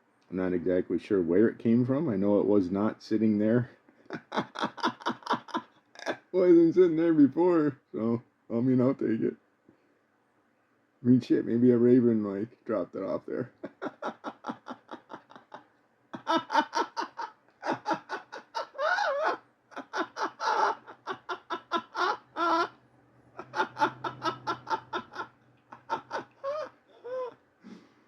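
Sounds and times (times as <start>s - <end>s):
man laughing hard: 4.1s - 6.4s, 13.5s - 15.6s, 16.2s - 22.7s, 23.4s - 27.3s.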